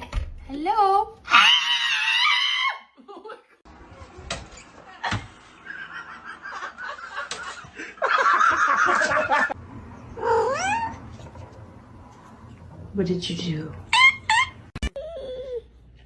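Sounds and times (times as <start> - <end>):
cat yowling: 1.3 - 2.8, 10.2 - 11.0.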